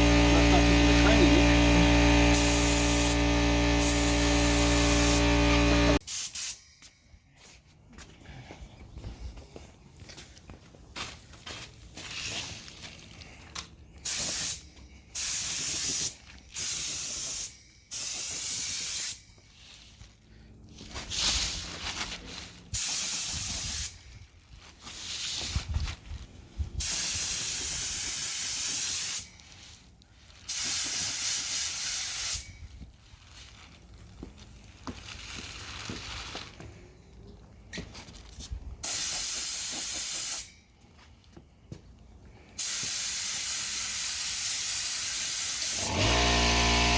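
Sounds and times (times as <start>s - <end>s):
spray paint hissing: 0.0s - 6.6s, 14.0s - 14.6s, 15.2s - 19.2s, 22.8s - 24.0s, 26.8s - 29.3s, 30.5s - 32.4s, 38.8s - 40.5s, 42.6s - 46.9s.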